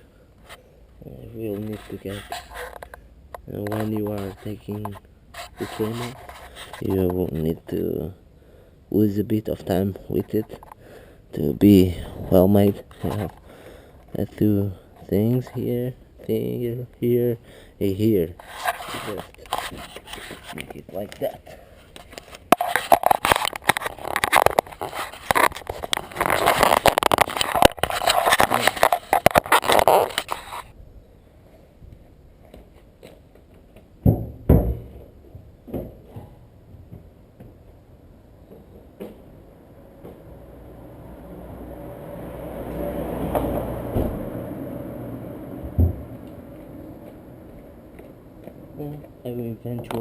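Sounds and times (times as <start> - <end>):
hands rubbing and scraping trim: 1.4 - 7.6, 18.3 - 30.8
sharp knocks: 34.0 - 37.6
passing vehicle rumble: 39.6 - 48.8.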